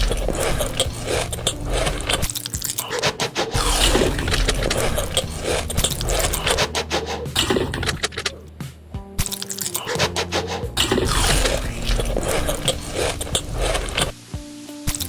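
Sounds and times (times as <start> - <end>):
crinkling and rustling: 0.0 - 8.4.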